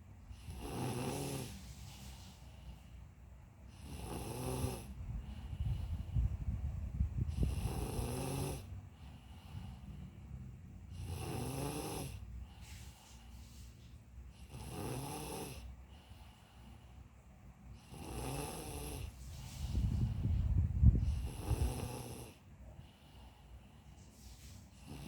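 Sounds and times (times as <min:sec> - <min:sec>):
person snoring: 0:00.3 - 0:01.7, 0:03.7 - 0:05.0, 0:07.3 - 0:08.7, 0:10.9 - 0:12.2, 0:14.4 - 0:15.7, 0:17.8 - 0:19.1, 0:21.0 - 0:22.4.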